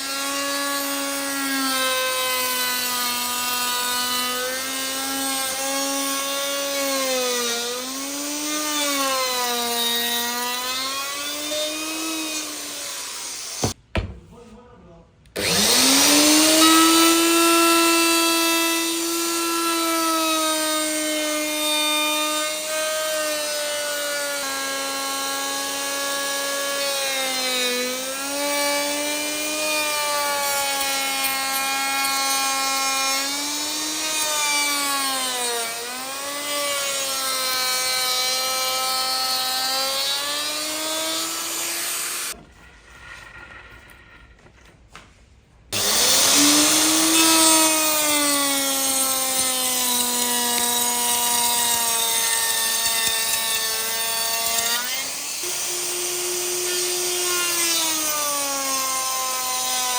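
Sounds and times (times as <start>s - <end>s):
power tool motor whine: 15.4s - 19.8s, 45.8s - 59.8s.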